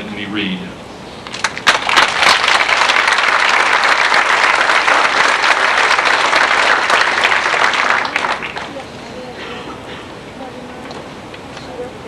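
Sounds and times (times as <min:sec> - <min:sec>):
audience applauding: 0:01.3 - 0:08.8.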